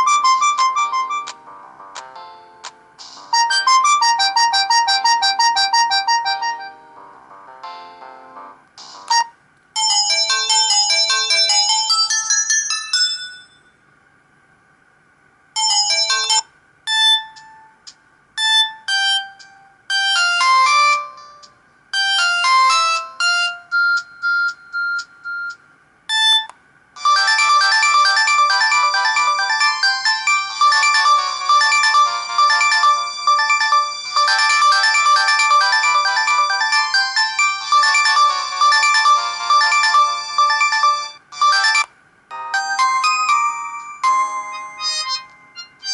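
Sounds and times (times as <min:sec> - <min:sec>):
polyphonic phone ringtones: 0:09.8 - 0:13.6, 0:15.6 - 0:17.7, 0:26.1 - 0:45.9.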